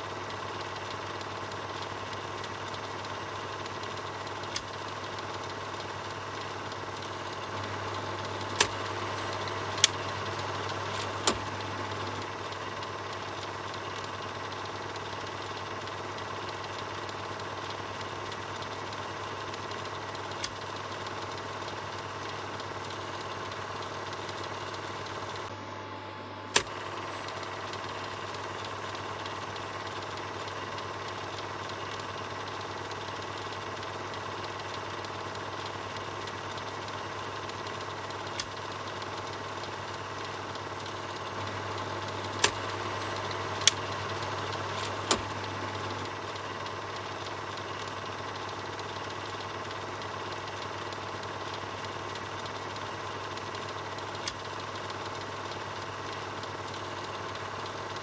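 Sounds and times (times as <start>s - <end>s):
film projector whirring: 0.0s - 58.0s
projector clicks: 0.2s - 25.5s, 26.5s - 58.0s.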